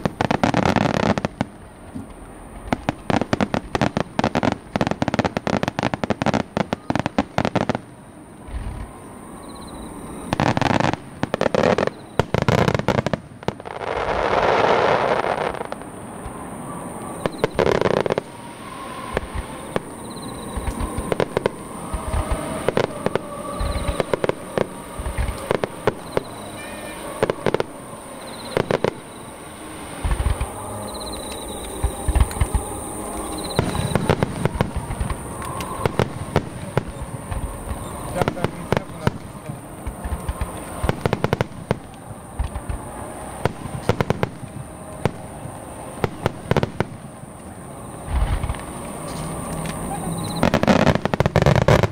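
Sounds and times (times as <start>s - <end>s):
fireworks bursting with sharp bangs: 0.0s - 51.9s
rushing firework burst: 9.8s - 47.2s.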